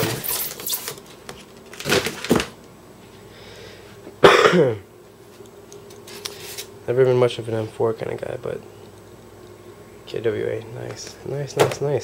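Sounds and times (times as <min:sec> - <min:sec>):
man coughing loudly: 0:04.2 - 0:04.9.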